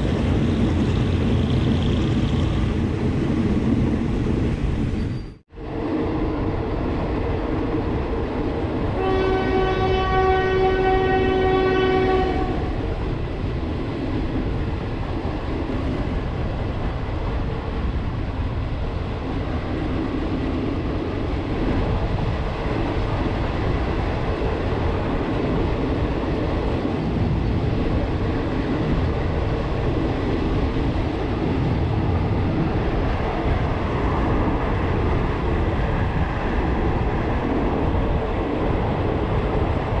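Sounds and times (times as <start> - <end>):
train rumbling on rails: 0.0 - 40.0
train horn blast: 9.0 - 12.7.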